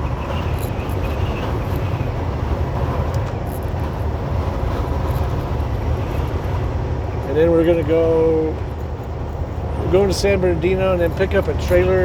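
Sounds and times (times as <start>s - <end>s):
road and wind noise: 0.0s - 12.0s
truck engine drone: 0.0s - 12.0s.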